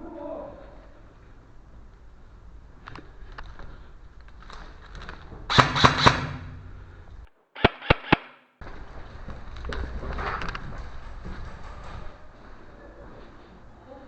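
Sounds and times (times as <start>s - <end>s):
airsoft gun shots: 5.5s - 6.8s, 7.6s - 8.5s.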